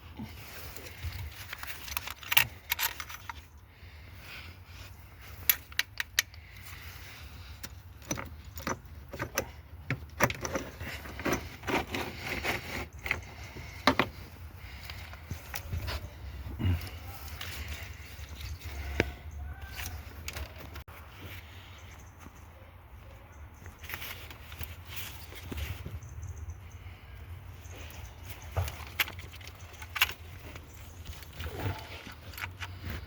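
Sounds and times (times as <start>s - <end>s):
metal tools clinking: 0.6s - 3.6s, 5.1s - 20.8s, 27.6s - 33.0s.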